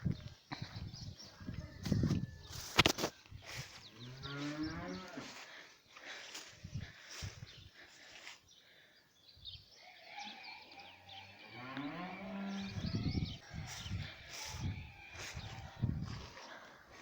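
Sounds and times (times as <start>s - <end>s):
cow mooing: 10.2s - 12.9s.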